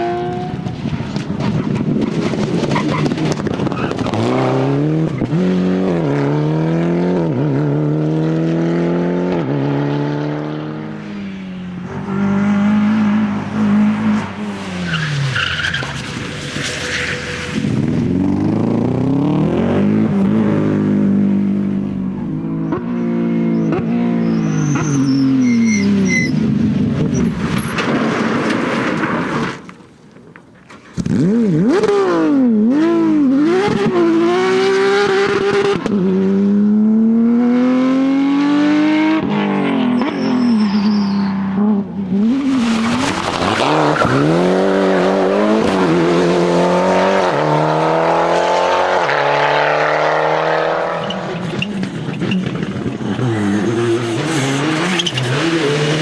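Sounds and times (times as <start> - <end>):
rally car engines revving: 0.0 - 29.7, 30.8 - 56.0
tyres squealing: 23.5 - 26.4, 39.8 - 41.5.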